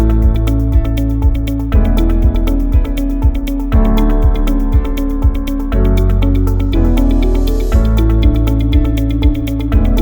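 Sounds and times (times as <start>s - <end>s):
upbeat electronic music: 0.0s - 10.0s.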